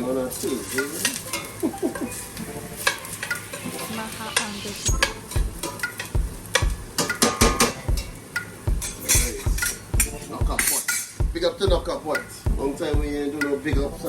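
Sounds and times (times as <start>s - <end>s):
food sizzling in hot oil: 2.2s - 7.2s.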